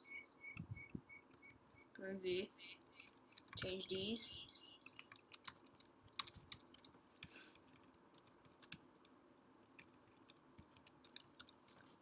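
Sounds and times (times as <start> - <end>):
faint clicks: 3.3 - 12.0.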